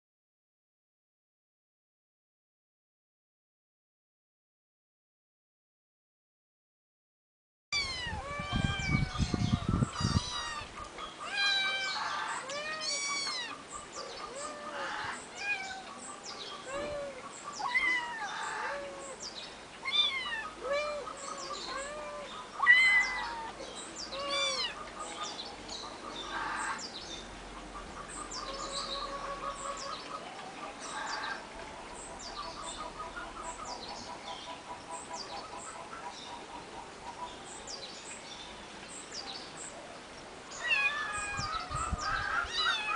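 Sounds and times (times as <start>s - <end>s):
kittens meowing: 7.8s - 13.6s, 14.3s - 15.9s, 16.6s - 19.2s, 19.8s - 24.8s, 40.6s - 42.9s
birds chirping: 7.8s - 42.9s.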